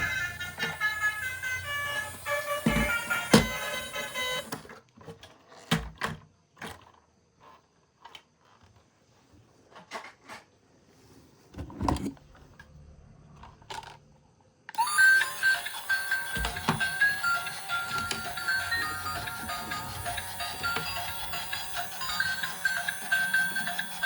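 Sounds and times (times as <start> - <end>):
plastic toy vehicles knocking: 0.0 - 4.5.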